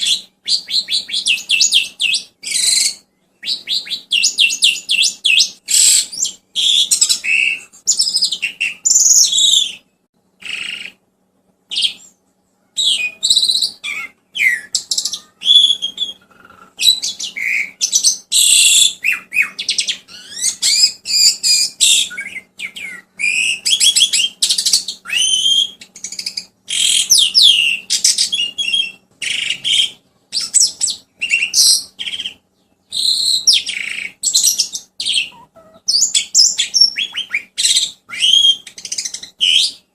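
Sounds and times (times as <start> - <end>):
songbird chirping and trilling: 0.0 - 39.9.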